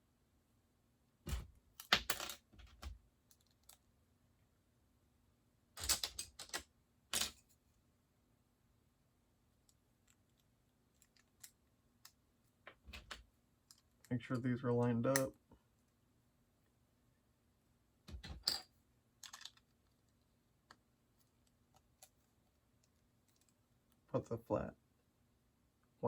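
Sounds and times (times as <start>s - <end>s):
plastic bricks clicking together: 19.2s - 20.0s.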